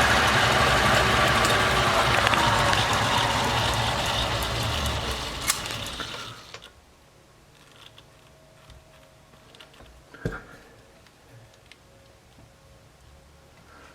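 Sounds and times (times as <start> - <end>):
lathe running: 0.0 - 6.7.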